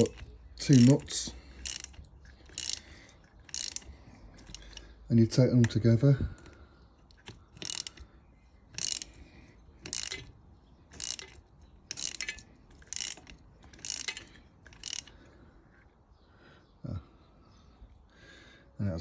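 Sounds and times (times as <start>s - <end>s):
ratchet wrench clicking: 0.0s - 5.0s, 6.4s - 8.1s, 8.7s - 9.2s, 9.8s - 15.2s.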